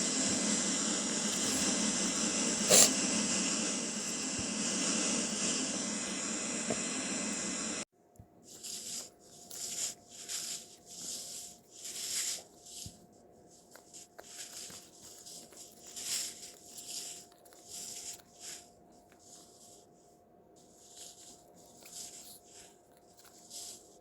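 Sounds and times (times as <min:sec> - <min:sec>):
soft hissing swishes: 0:00.0 - 0:07.9
steady hiss: 0:00.0 - 0:07.9.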